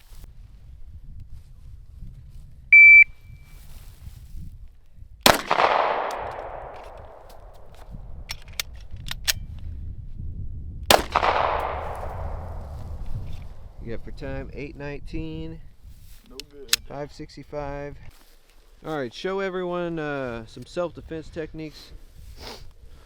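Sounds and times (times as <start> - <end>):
shot timer beep: 2.8 - 3.1
pistol shots: 5.3 - 7.6, 10.9 - 13.0
magazine reload clicks: 5.3 - 9.4, 10.9 - 12.2.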